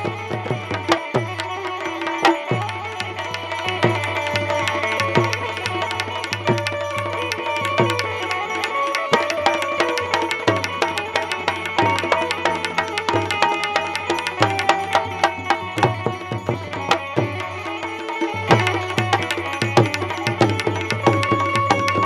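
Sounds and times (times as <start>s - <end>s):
hand drum beating: 0.0s - 22.0s.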